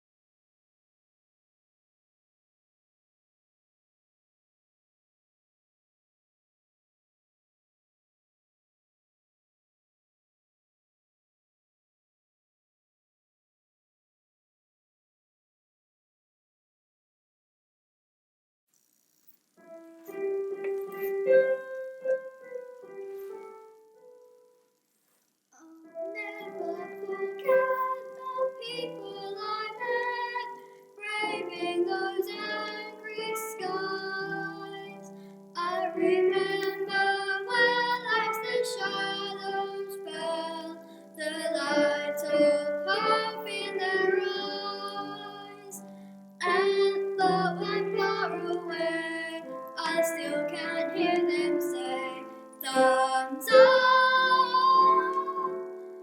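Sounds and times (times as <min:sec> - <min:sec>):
instrumental accompaniment: 0:19.6 - 0:24.6
person singing: 0:25.6 - 0:56.0.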